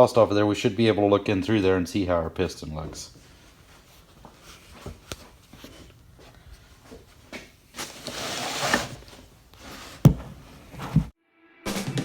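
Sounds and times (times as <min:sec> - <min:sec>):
rubbing scrape: 0:03.2 - 0:11.1.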